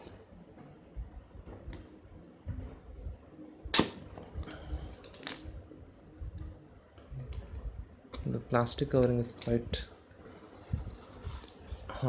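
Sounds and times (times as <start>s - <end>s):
loud plastic snap: 3.7s - 4.1s.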